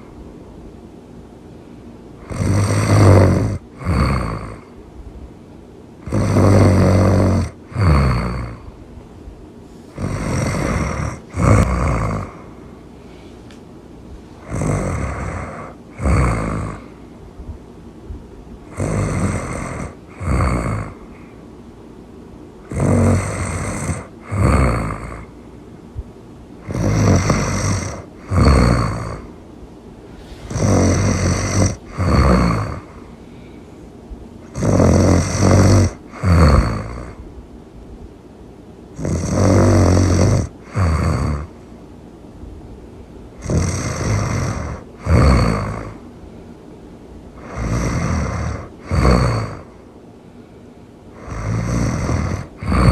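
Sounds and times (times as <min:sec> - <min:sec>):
loud rasping snoring: 0:02.2 - 0:04.7, 0:06.0 - 0:08.7, 0:09.9 - 0:12.6, 0:14.4 - 0:17.0, 0:18.7 - 0:21.2, 0:22.6 - 0:25.3, 0:26.6 - 0:29.3, 0:30.1 - 0:33.1, 0:34.4 - 0:37.2, 0:39.0 - 0:41.6, 0:43.4 - 0:46.0, 0:47.4 - 0:49.8, 0:51.2 - 0:52.9.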